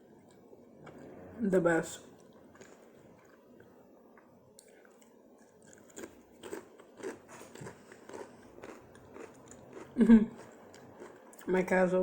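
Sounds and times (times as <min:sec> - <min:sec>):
person chewing food: 0:02.2 - 0:11.5
crunchy bites: 0:05.6 - 0:11.2.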